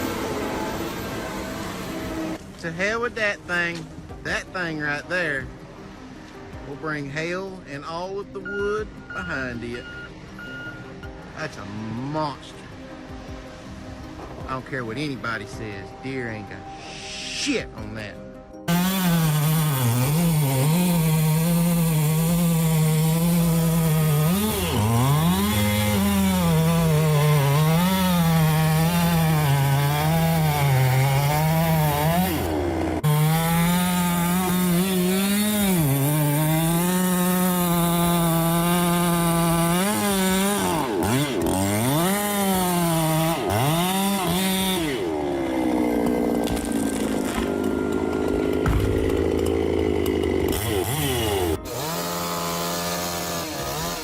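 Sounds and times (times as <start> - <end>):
chainsaw cutting wood: 0.0 - 3.0, 18.6 - 54.0.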